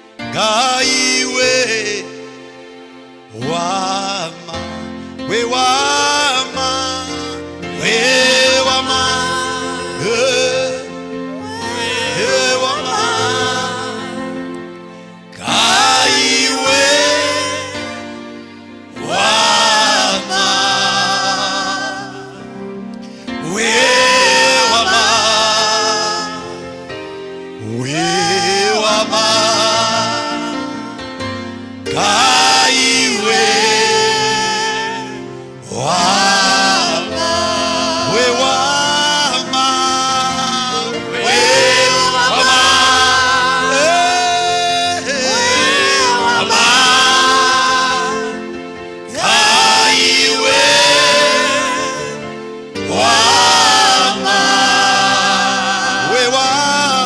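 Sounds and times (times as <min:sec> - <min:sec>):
person singing gospel song: 0:00.0 - 0:57.0
sustained accompanying chords: 0:00.0 - 0:57.0.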